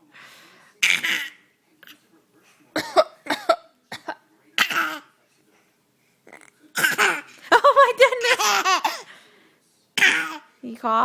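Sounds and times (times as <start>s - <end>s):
person coughing: 2.8s - 5.0s.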